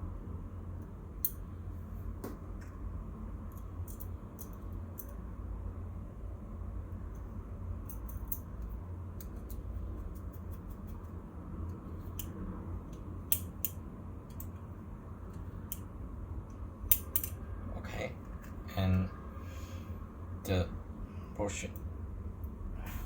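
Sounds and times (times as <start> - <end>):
metal knife parts clicking: 3.5 - 5.2, 7.1 - 11.1, 11.7 - 14.6, 16.9 - 17.4.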